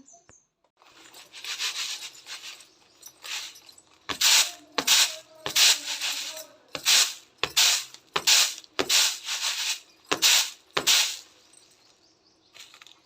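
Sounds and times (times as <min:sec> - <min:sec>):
rhythmic scraping strokes: 0:01.0 - 0:11.3.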